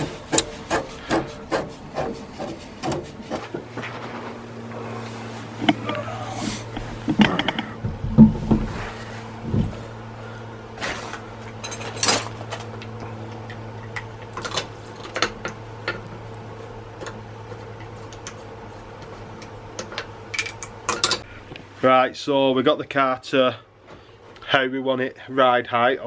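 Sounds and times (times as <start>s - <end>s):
hand tools knocking on metal: 0.0s - 3.6s
steady low hum: 0.0s - 25.4s.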